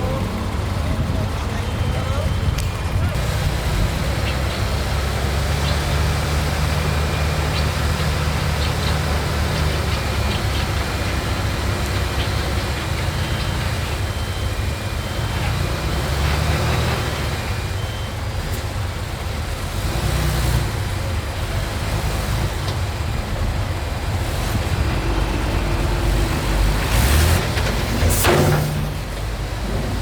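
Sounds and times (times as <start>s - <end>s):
reversing alarm beeping: 0.0s - 18.4s, 24.1s - 29.2s
diesel engines of earthmoving machines: 0.0s - 30.0s.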